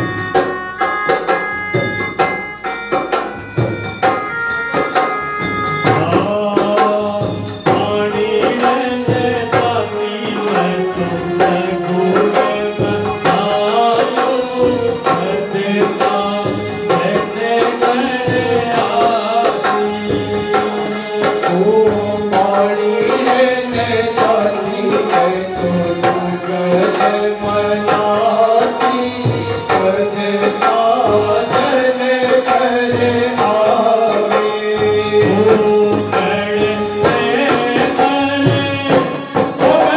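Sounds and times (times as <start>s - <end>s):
hand drum beat: 0.0s - 9.8s.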